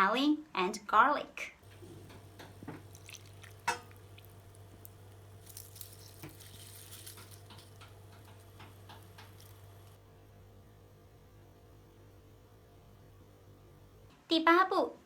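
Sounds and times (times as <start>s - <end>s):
light water noise: 1.6s - 10.0s
steady electrical hum: 1.6s - 15.0s
utensils clicking on bowl: 1.7s - 10.0s.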